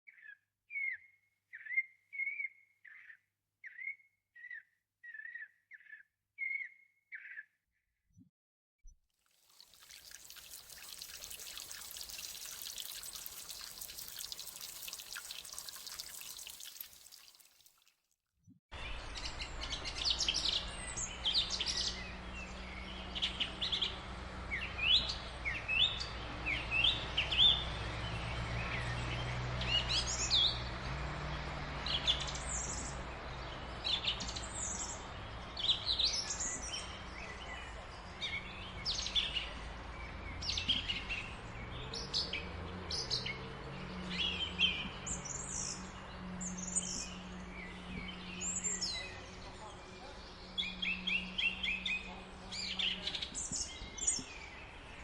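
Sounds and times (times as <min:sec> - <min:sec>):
water pouring: 0:09.2 - 0:18.0
birds chirping: 0:09.6 - 0:17.5.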